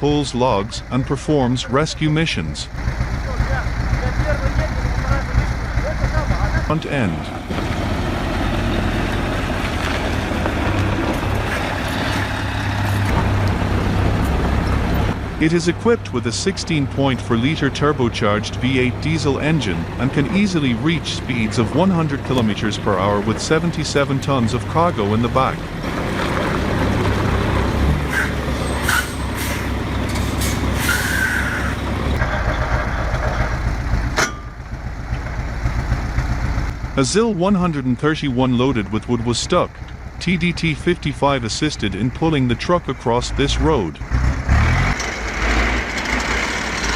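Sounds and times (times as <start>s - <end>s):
diesel engine droning: 0.0s - 46.9s
brief squeal: 28.1s - 29.7s, 30.4s - 31.8s
air hissing: 28.1s - 31.8s.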